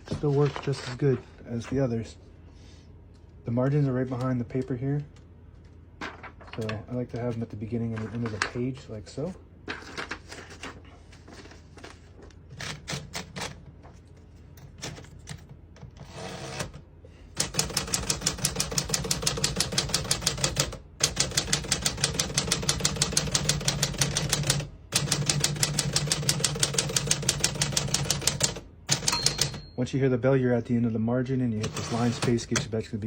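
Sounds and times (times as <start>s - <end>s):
typewriter key strikes: 17.4s - 29.7s
typewriter mechanism clicks: 17.4s - 29.7s.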